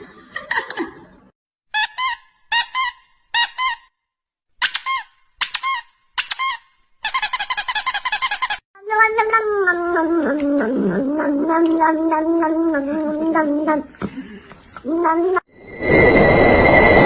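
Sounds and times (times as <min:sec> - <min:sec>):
high-pitched squeaks: 0:15.6 - 0:17.0.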